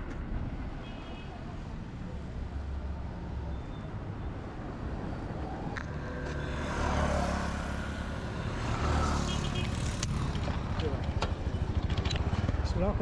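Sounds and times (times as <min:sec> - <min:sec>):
road traffic rumble: 0:00.0 - 0:13.0
vehicle passing by: 0:04.8 - 0:11.0.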